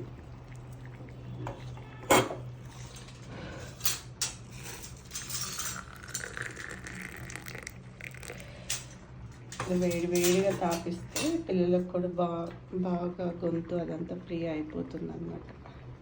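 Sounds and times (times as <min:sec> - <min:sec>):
steady low hum: 0:00.0 - 0:16.0
dishes and utensils clinking: 0:01.4 - 0:11.4.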